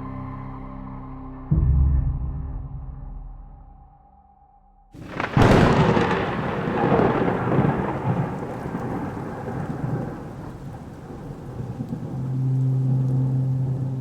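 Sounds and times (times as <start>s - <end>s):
low synth drone: 0.0s - 4.5s, 12.0s - 14.0s
rain: 5.0s - 14.0s
thunder rumbling: 5.0s - 14.0s.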